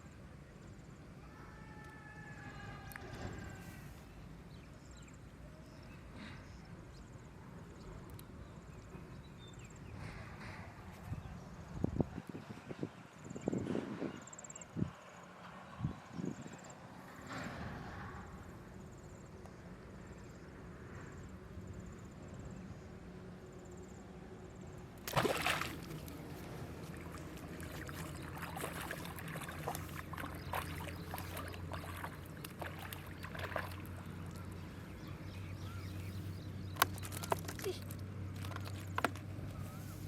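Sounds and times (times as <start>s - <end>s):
steady low hum: 17.7s - 40.0s
water splashing in a river: 25.0s - 35.0s.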